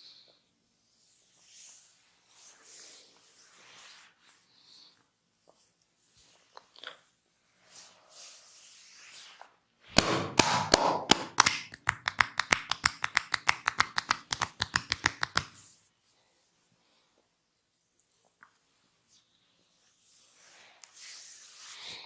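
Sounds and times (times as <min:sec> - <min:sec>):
hands slapping on body: 0:10.0 - 0:15.6
hands rubbing on skin: 0:10.5 - 0:15.7.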